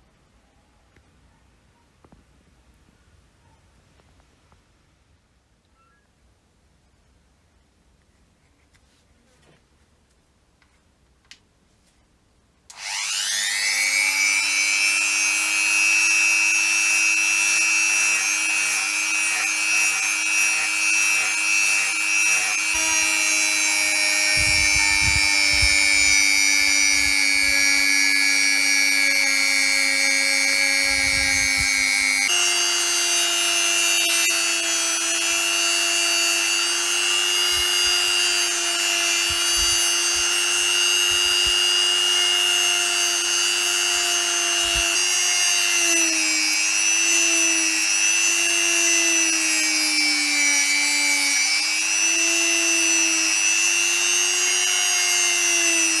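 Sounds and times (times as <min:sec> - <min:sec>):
electric power tool motor whine: 0:12.7 - 0:56.0.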